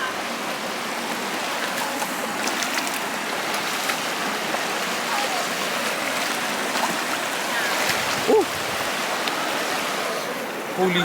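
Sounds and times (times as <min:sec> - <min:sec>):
rushing river water: 0:00.0 - 0:11.0
faint voices: 0:07.3 - 0:11.0.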